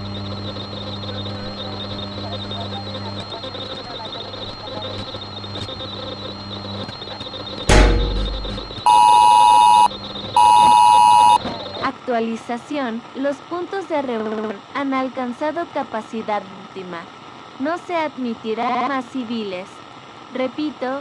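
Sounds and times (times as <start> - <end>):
loud steady electronic beep: 7.7 - 11.4.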